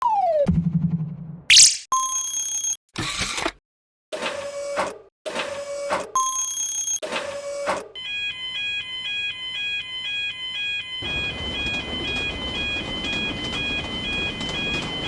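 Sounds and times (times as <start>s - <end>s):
level crossing warning bell: 6.2s - 7.0s, 8.0s - 15.0s
passing train rumble: 11.0s - 15.0s.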